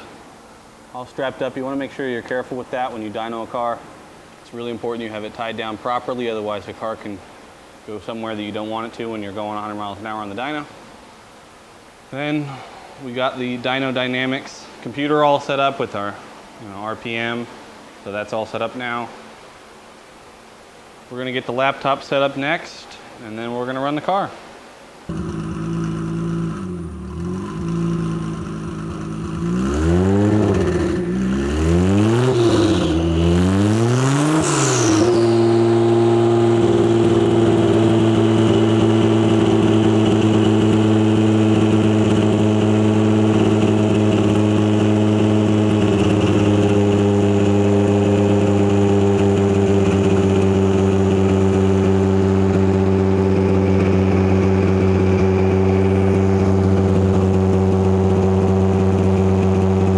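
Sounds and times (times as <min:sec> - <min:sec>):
car engine revving on dyno: 0:25.1 - 0:59.9.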